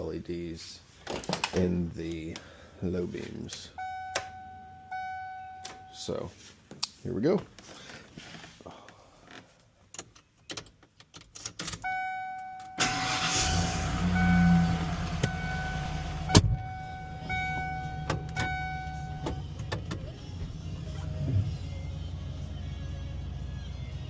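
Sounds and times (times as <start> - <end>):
warning chime dinging: 3.8 - 6.1, 11.9 - 13.2, 14.1 - 19.4
engine cranking and idling: 12.8 - 22.4.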